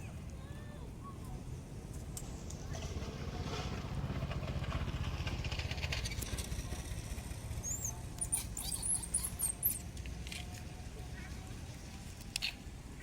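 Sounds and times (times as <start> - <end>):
baby monkey squeaking: 7.6 - 9.8.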